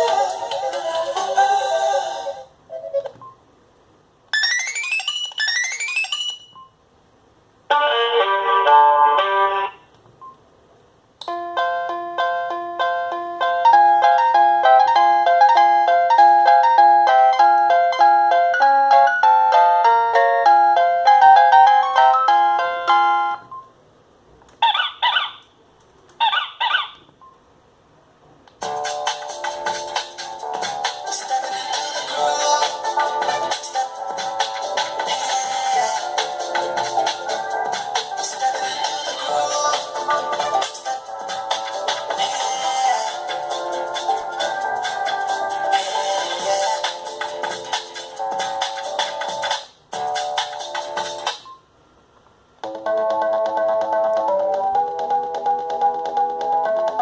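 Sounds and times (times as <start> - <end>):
electronic phone ringtone: 4.4 - 6.7.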